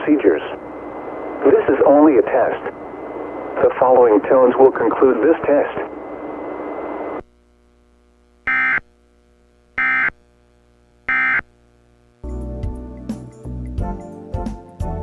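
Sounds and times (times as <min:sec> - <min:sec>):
music: 0:12.2 - 0:15.0.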